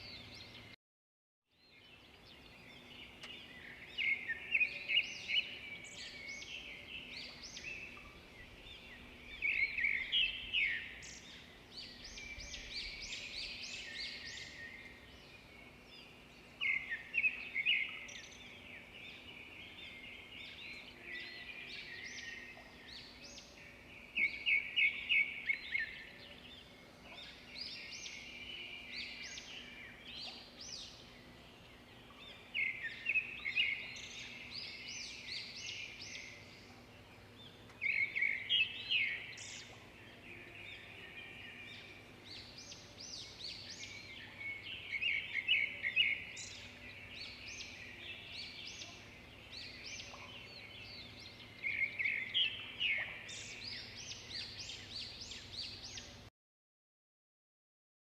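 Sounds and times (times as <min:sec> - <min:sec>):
songbirds singing and chirping: 0:00.0 - 0:00.8, 0:01.5 - 0:56.3.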